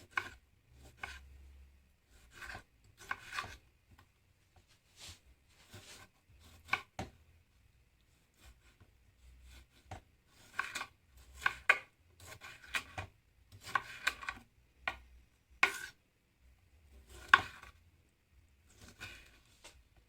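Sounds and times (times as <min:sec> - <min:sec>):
knife chopping on cutting board: 0:00.0 - 0:01.2, 0:02.1 - 0:03.6, 0:05.7 - 0:07.2, 0:09.4 - 0:16.0, 0:17.0 - 0:17.8.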